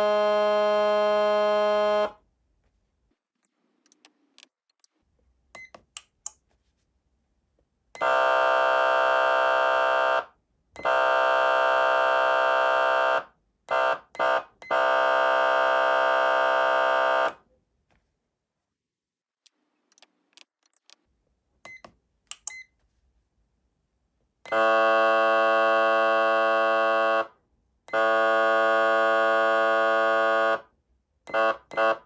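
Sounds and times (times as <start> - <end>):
electronic horn tone blasts: 0.0 - 2.2, 8.0 - 17.4, 24.5 - 30.7, 31.3 - 32.0.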